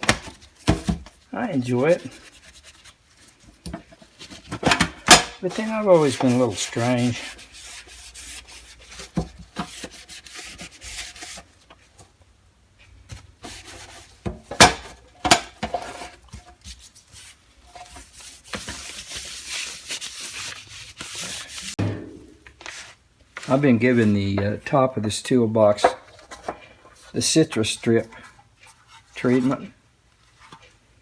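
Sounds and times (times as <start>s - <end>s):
hand scrubbing steel toolbox: 0.0s - 11.6s, 23.4s - 29.7s
sharp knocks on metal: 21.8s - 22.4s.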